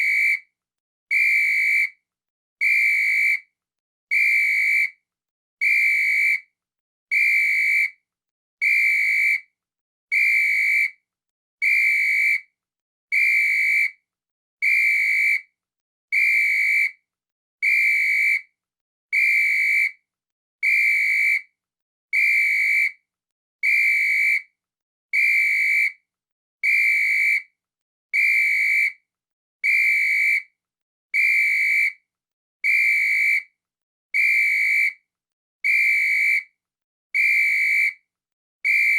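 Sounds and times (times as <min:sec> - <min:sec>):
whistle blasts: 0:00.0 - 0:00.4, 0:01.1 - 0:02.0, 0:02.6 - 0:03.4, 0:04.1 - 0:05.0, 0:05.6 - 0:06.4, 0:07.1 - 0:08.0, 0:08.6 - 0:09.4, 0:10.1 - 0:11.0, 0:11.6 - 0:12.5, 0:13.1 - 0:14.0, 0:14.6 - 0:15.5, 0:16.1 - 0:17.0, 0:17.6 - 0:18.5, 0:19.2 - 0:20.0, 0:20.6 - 0:21.5, 0:22.2 - 0:23.0, 0:23.6 - 0:24.5, 0:25.2 - 0:26.0, 0:26.6 - 0:27.5, 0:28.2 - 0:29.0, 0:29.6 - 0:30.5, 0:31.2 - 0:32.0, 0:32.6 - 0:33.5, 0:34.2 - 0:35.0, 0:35.6 - 0:36.5, 0:37.2 - 0:38.0, 0:38.6 - 0:38.9.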